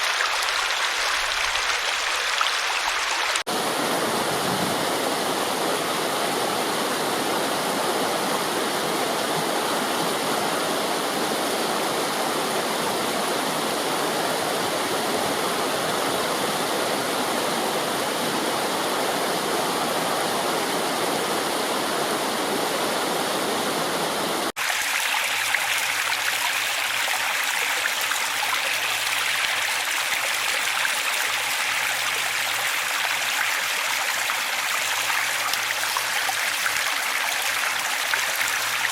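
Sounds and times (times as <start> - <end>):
stream water rushing: 0.0 - 38.9.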